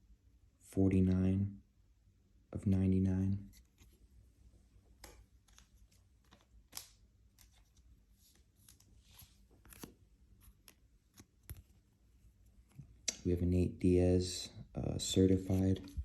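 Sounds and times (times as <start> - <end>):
trading cards rustling: 4.9 - 13.3, 15.0 - 16.0.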